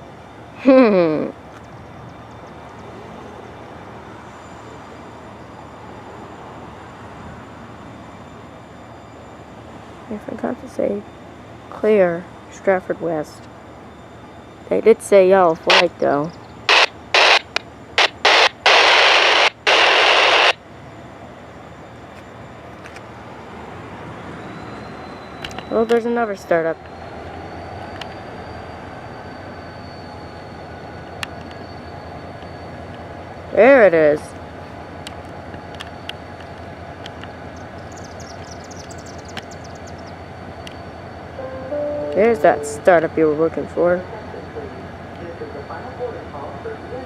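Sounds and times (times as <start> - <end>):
faint high whine: 1.7 - 22.7, 37.4 - 46.9
scanner radio static: 15.7 - 20.6, 41.4 - 43.3
distant engine rumble: 36.4 - 47.0.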